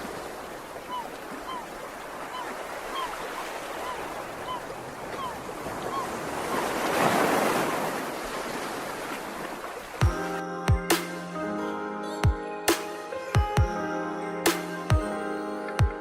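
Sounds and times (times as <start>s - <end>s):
sea waves washing on shore: 0.0s - 11.3s
music with sharp hits: 10.0s - 11.4s, 14.5s - 15.2s.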